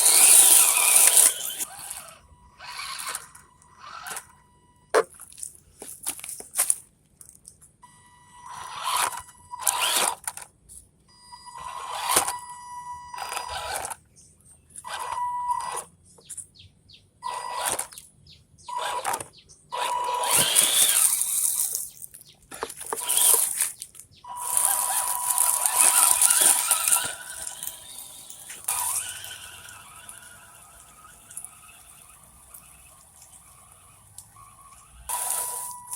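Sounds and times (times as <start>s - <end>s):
electric motor whining: 0.0s - 4.4s, 18.7s - 21.9s, 22.9s - 23.6s, 24.3s - 35.9s.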